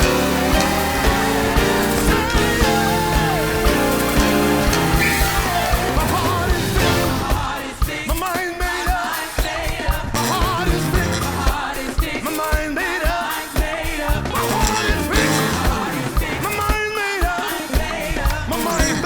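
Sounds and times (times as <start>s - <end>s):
wavering lead voice: 0.0s - 7.7s, 14.2s - 16.8s
drums keeping a steady beat: 0.0s - 19.0s
worship band playing: 0.0s - 19.0s.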